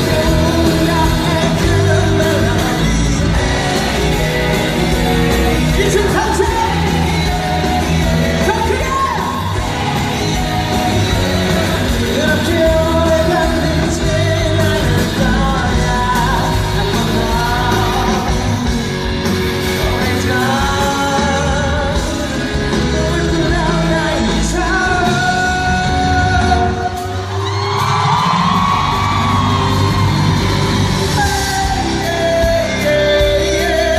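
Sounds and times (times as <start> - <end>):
man singing: 0.0 - 27.6, 30.8 - 33.9
live band music: 0.0 - 33.9
crowd shouting: 2.9 - 13.7.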